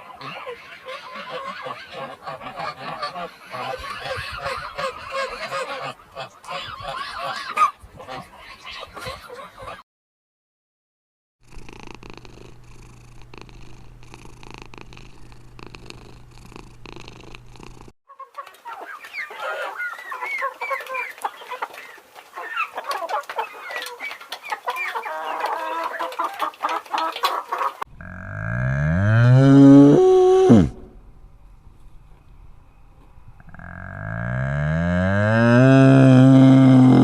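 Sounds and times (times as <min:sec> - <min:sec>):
chickens clucking: 0:00.0 - 0:09.8, 0:18.1 - 0:27.9
low steady hum: 0:11.5 - 0:17.9, 0:27.9 - 0:35.6.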